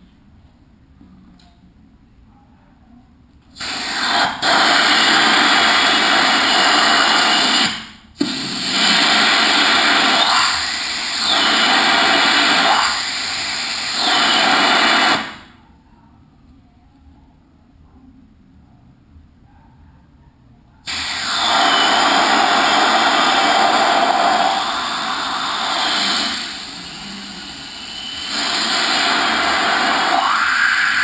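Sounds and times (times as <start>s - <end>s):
compressed air hissing from hose: 3.6s - 15.5s, 20.9s - 31.0s.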